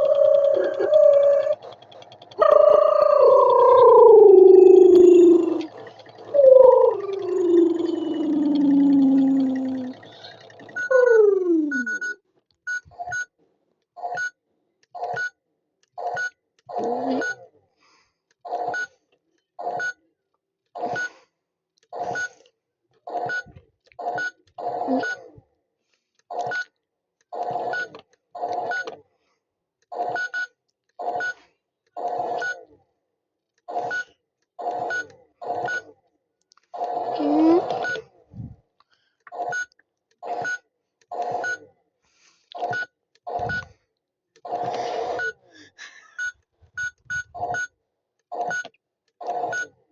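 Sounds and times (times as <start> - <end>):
electronic warbling sound: 0.0 - 1.7, 2.4 - 11.9.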